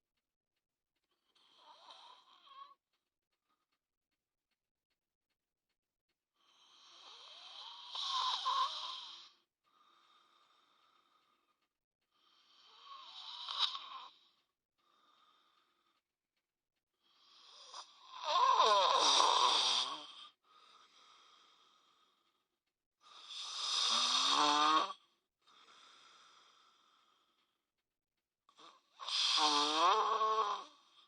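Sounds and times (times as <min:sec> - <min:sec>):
person snoring heavily: 0:01.4 - 0:02.8, 0:06.4 - 0:09.4, 0:12.2 - 0:14.3, 0:17.2 - 0:22.0, 0:23.0 - 0:25.0, 0:28.6 - 0:31.0
faint breaths: 0:06.4 - 0:18.0, 0:19.0 - 0:24.0, 0:25.0 - 0:27.9.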